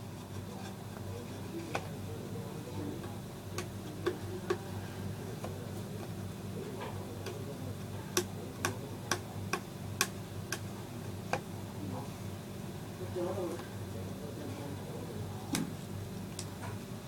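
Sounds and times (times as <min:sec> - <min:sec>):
steady low hum: 0:00.0 - 0:17.0
sharp clicks and taps: 0:08.2 - 0:10.7.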